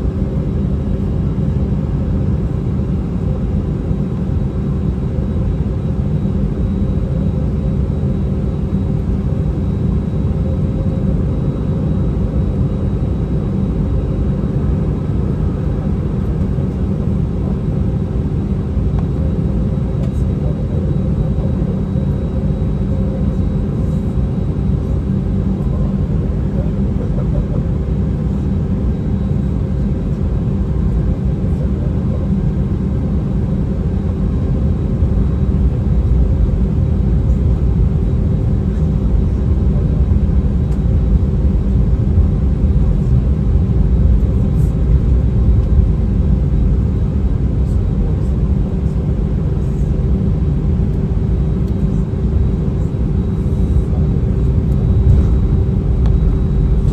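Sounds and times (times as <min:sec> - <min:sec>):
jet engines and airflow in cabin: 0:00.0 - 0:56.9
steady hum: 0:33.6 - 0:56.9.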